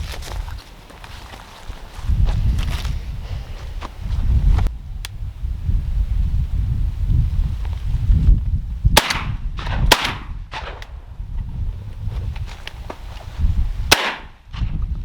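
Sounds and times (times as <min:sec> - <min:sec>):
wind rumble on microphone: 0:00.0 - 0:15.0
distant shotgun shots: 0:09.0 - 0:10.9, 0:13.9 - 0:14.4
loud shotgun shots: 0:09.0 - 0:10.9, 0:13.9 - 0:14.4.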